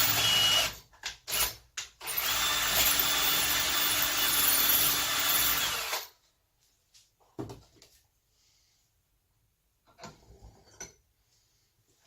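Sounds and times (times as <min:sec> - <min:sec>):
cordless drill boring: 0:00.0 - 0:06.2.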